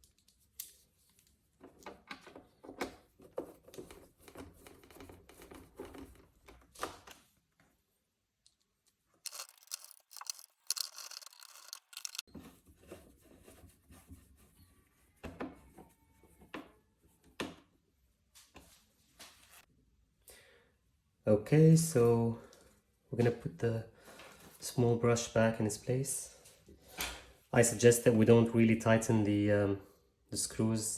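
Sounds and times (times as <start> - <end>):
clicks and knocks of plastic parts: 9.3 - 12.3
harsh scraping and rustling: 9.3 - 13.7.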